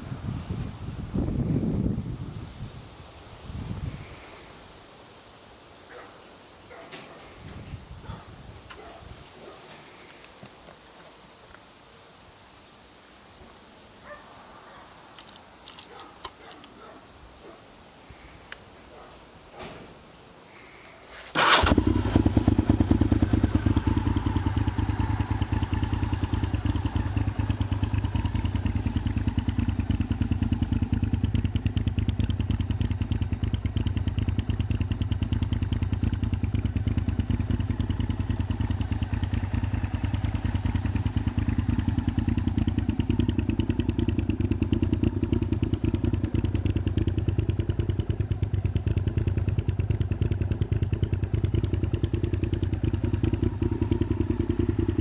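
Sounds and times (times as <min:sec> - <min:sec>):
motorcycle engine idling: 0:21.4 - 0:55.0.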